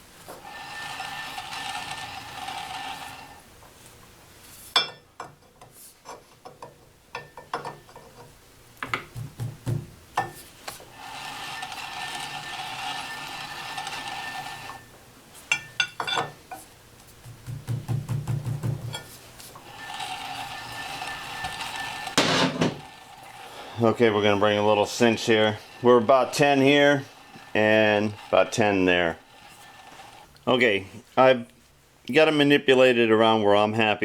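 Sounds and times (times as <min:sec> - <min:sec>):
metal lathe whirring: 0:00.3 - 0:03.5, 0:10.8 - 0:15.7, 0:19.6 - 0:30.5
sharp knocks and clicks: 0:17.2 - 0:19.0.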